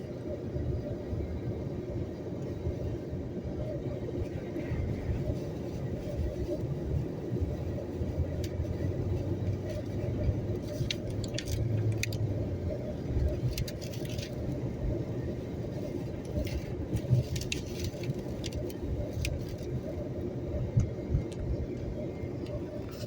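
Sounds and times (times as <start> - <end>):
wind gusting on microphone: 0.2 - 23.0
sharp clicks and rattles: 10.6 - 12.3.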